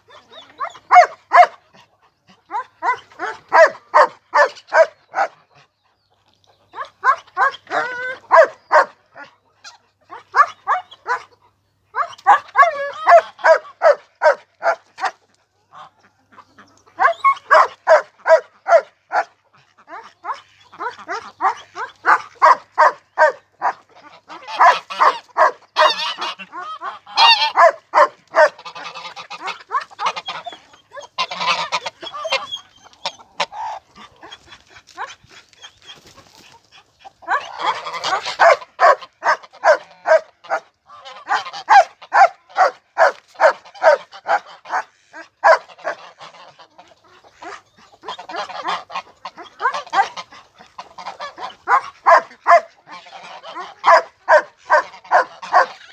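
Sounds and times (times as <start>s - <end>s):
birds calling harshly: 28.4s - 34.7s.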